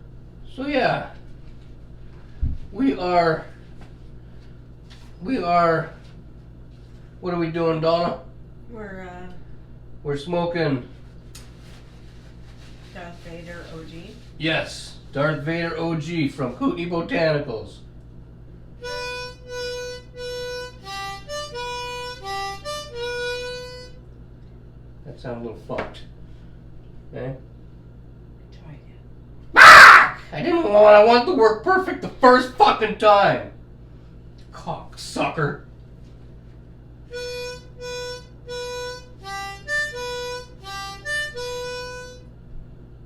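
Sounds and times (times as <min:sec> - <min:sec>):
harmonica playing a short tune: 0:18.8 - 0:24.0, 0:37.1 - 0:42.3.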